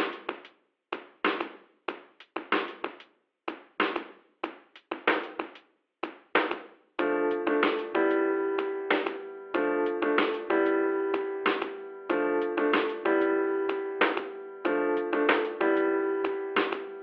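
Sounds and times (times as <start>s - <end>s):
percussive drum beat: 0.0s - 6.7s
sustained keyboard chords: 7.0s - 17.0s.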